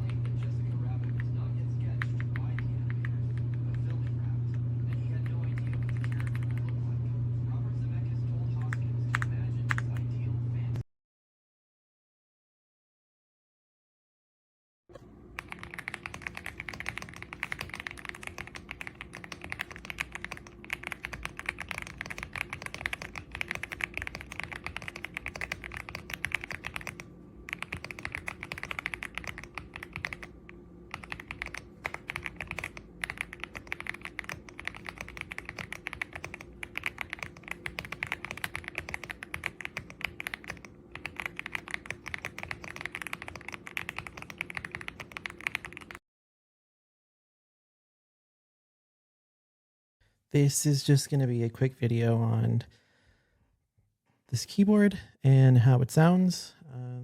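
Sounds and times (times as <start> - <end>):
mechanical keyboard typing: 4.9 - 6.7, 15.4 - 46.0.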